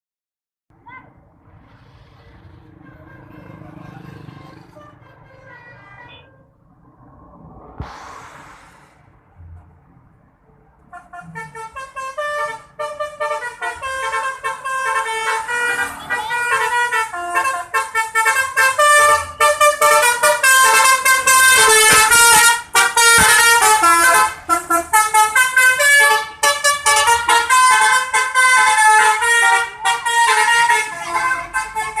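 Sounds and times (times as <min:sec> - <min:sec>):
musical bus horn melody: 0:10.9 - 0:32.0.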